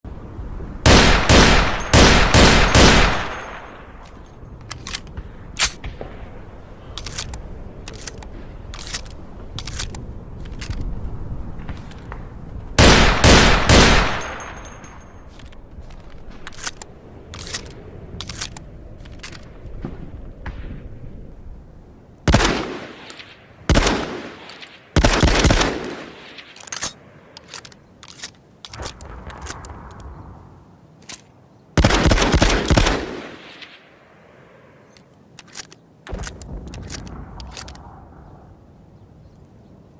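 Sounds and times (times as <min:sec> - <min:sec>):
shotgun shots: 0:00.9 - 0:04.0, 0:12.8 - 0:14.7, 0:22.3 - 0:26.6
sharp clicks: 0:07.0 - 0:10.9, 0:14.1 - 0:19.5, 0:23.0 - 0:30.1, 0:34.9 - 0:37.9.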